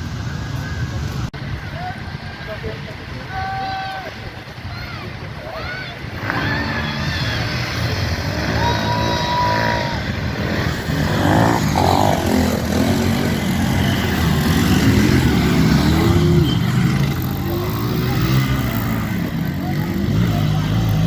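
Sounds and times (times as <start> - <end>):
motorcycle engine revving: 6.0 - 21.0.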